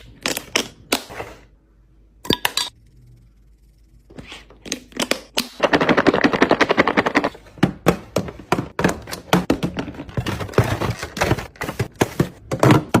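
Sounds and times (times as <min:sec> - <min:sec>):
items knocking on fridge shelves: 0:05.3 - 0:13.0.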